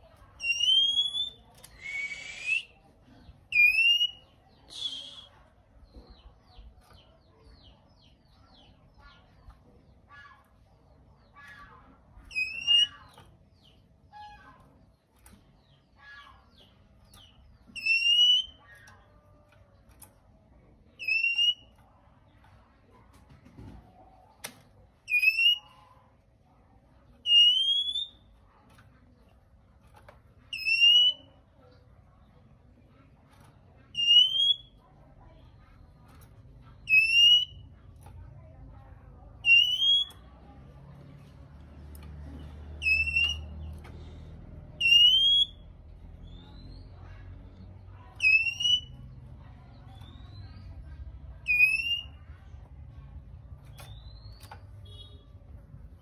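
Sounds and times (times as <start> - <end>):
bird whistling: 0.4 - 2.8, 3.5 - 5.3, 12.3 - 13.0, 17.8 - 18.6, 21.0 - 21.7, 25.1 - 25.7, 27.2 - 28.2, 30.5 - 31.3, 33.9 - 34.7, 36.8 - 37.6, 39.4 - 40.2, 42.8 - 43.5, 44.8 - 45.6, 48.2 - 49.0, 51.4 - 52.2.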